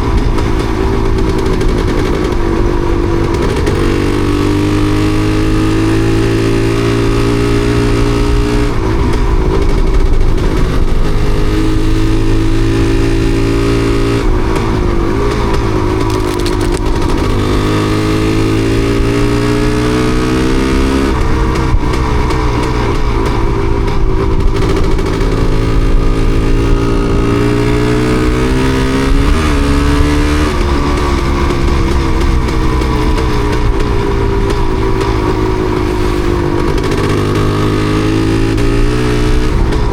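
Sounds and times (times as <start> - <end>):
two-stroke motorcycle engine misfiring: 0.0 - 8.0, 8.7 - 19.2.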